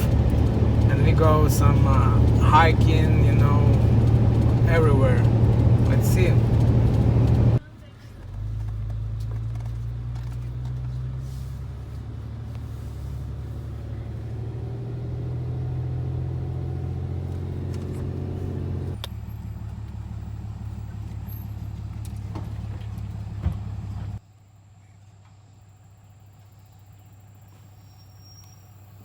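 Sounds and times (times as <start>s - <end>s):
car engine and road drone: 0.0s - 24.2s.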